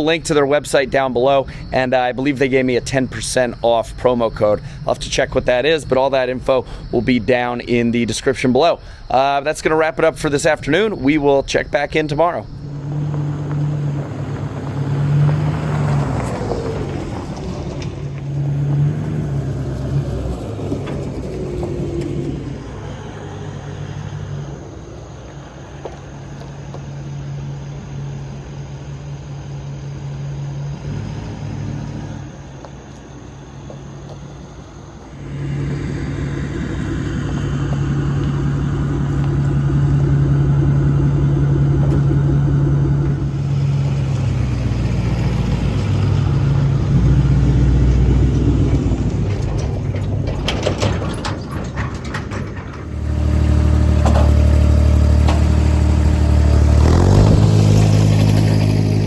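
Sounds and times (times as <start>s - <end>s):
engine running: 0.0s - 59.0s
knocks or clatter: 48.6s - 54.6s.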